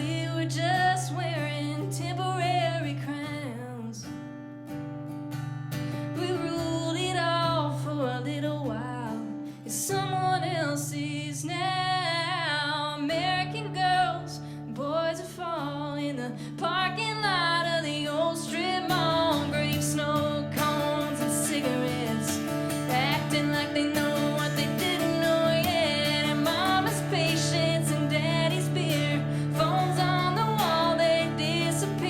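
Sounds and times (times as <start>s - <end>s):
acoustic guitar: 0.0s - 32.0s
person singing: 9.8s - 32.0s.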